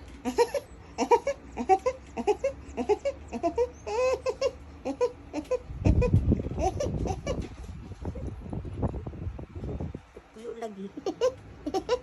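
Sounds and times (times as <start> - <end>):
high-pitched giggling: 0.2 - 7.6, 10.9 - 12.0.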